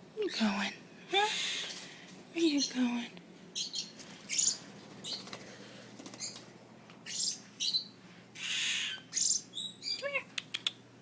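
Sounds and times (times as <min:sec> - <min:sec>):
baby parrots screeching: 0:07.0 - 0:10.1.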